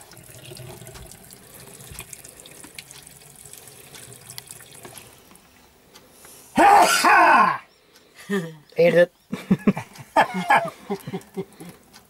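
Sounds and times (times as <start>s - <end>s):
water running in a sink: 0.0s - 5.2s
light drips and ticks: 0.0s - 6.4s, 7.8s - 12.0s.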